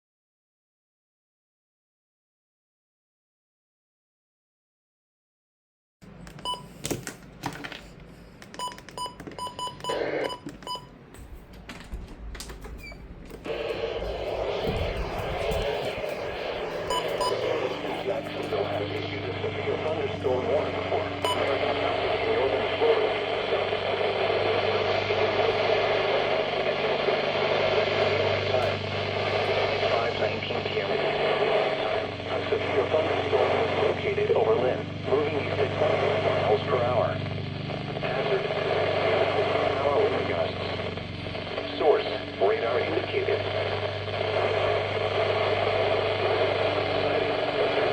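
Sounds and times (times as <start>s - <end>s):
low electrical hum: 6.0s - 36.6s
radio static: 8.4s - 11.3s, 12.8s - 47.9s
loud steady noise: 12.6s - 47.9s
short high electronic beeps: 16.0s - 18.1s.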